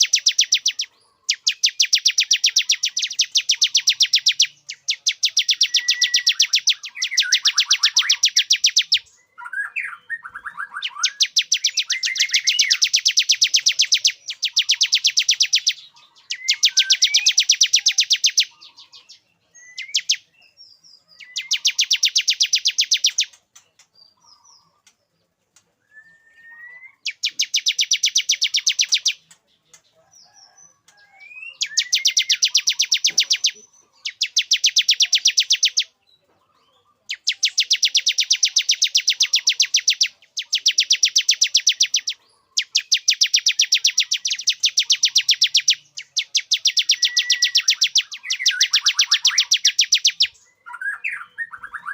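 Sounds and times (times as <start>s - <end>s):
bird buzzy trill: 0.0s - 9.1s, 10.2s - 19.1s, 21.2s - 23.4s, 26.9s - 29.4s, 31.6s - 35.9s, 37.1s - 50.4s.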